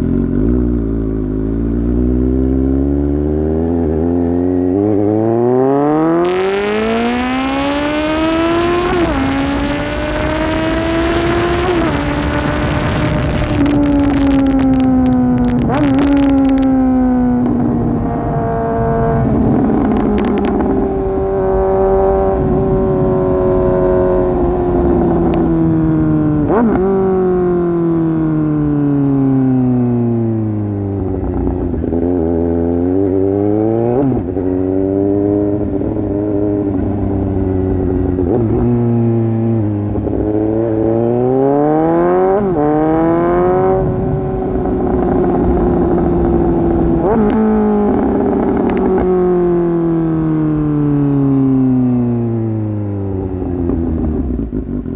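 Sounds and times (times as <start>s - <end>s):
motorcycle engine revving: 3.0s - 25.6s.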